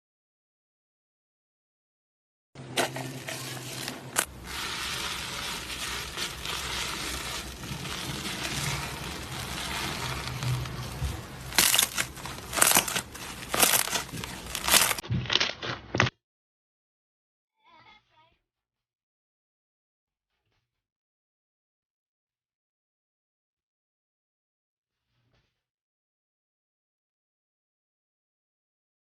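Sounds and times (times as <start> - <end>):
slime crackling: 3.0 - 15.0.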